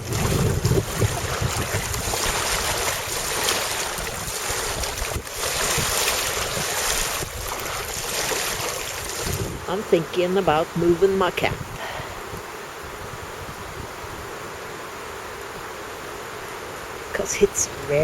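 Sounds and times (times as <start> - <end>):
strong wind blowing: 0.0 - 14.4
wind buffeting on microphone: 0.0 - 14.5.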